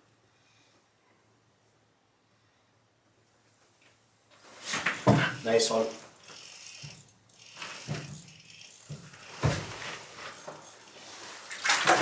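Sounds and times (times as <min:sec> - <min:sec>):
handling knocks and rustles: 0:04.3 - 0:12.0.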